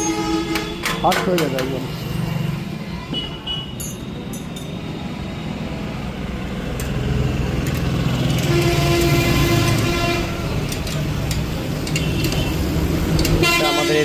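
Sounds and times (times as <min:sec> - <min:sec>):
vehicles passing: 0:00.0 - 0:14.0.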